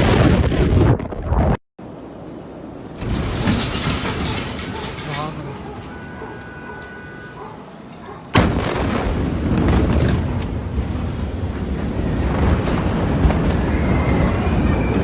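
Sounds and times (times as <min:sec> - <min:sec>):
explosion blast: 0:00.0 - 0:01.6, 0:08.3 - 0:15.0
rolling rumble with crackles: 0:00.0 - 0:06.5, 0:07.3 - 0:15.0.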